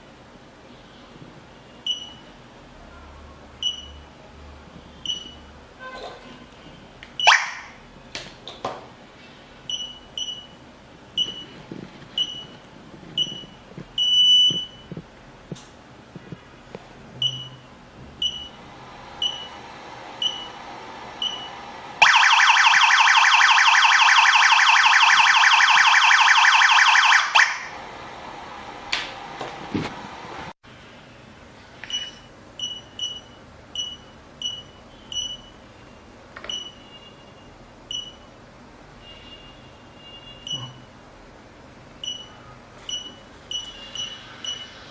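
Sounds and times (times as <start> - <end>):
alarm siren warbling: 22.0 - 27.7.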